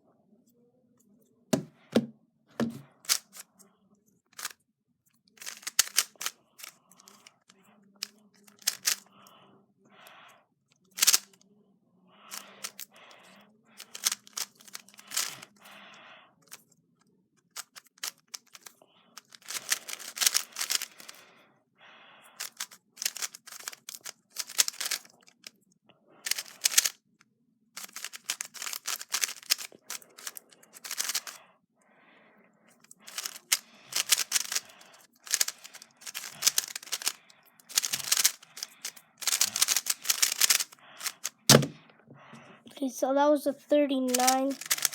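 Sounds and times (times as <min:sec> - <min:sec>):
puzzle cube turns clicking: 0:01.6 - 0:03.4, 0:04.4 - 0:04.6, 0:05.3 - 0:09.1, 0:10.9 - 0:11.4, 0:12.3 - 0:15.6, 0:17.4 - 0:21.2, 0:22.4 - 0:25.5, 0:26.2 - 0:27.0, 0:27.8 - 0:31.4, 0:32.8 - 0:41.8, 0:44.0 - 0:44.9.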